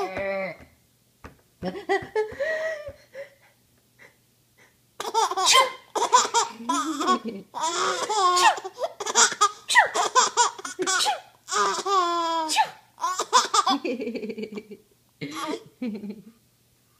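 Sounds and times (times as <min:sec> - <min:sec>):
baby laughing: 0:05.0 - 0:14.6
woman sneezing: 0:05.5 - 0:05.8, 0:09.7 - 0:10.0, 0:12.5 - 0:12.8.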